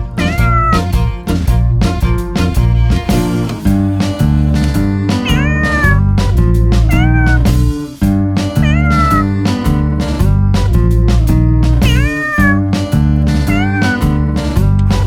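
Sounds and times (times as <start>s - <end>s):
background music with steady beat: 0.0s - 15.0s
kittens meowing: 0.1s - 1.0s, 5.2s - 6.1s, 6.9s - 7.7s, 8.6s - 9.6s, 11.8s - 12.7s, 13.5s - 14.2s.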